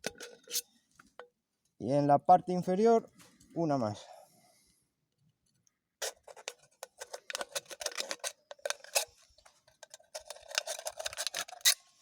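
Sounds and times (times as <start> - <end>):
knife cutting metal can: 0.0 - 0.6, 6.0 - 11.8.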